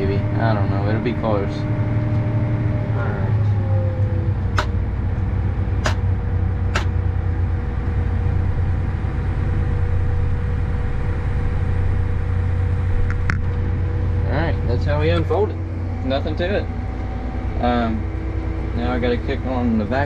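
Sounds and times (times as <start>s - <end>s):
tractor engine running: 0.0s - 20.0s
hydraulics unfolding planter: 4.5s - 4.8s
sharp clicks: 6.8s - 7.0s.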